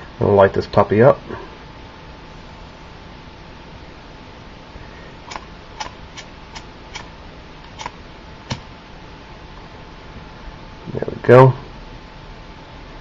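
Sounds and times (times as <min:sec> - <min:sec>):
piezo igniter clicking: 0:05.3 - 0:08.7.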